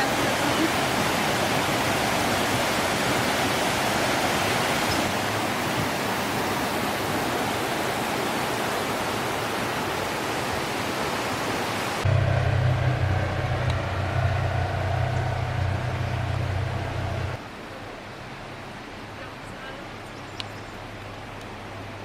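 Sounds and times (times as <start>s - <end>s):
waterfall rushing: 0.0s - 17.4s.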